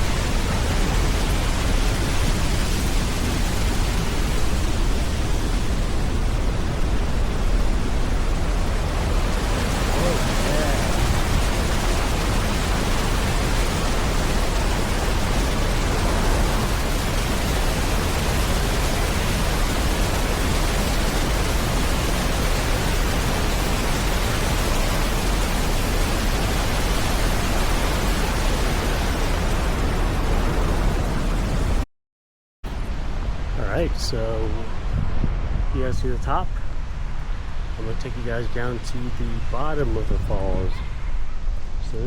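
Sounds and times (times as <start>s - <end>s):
waterfall rushing: 0.0s - 31.8s.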